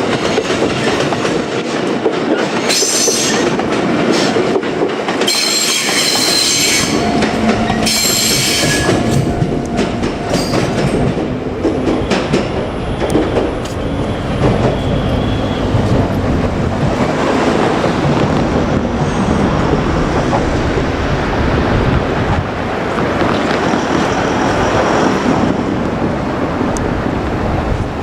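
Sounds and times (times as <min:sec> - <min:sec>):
train wheels rumbling on rail: 0:00.0 - 0:28.0
faint high wheel squeal: 0:13.6 - 0:16.0.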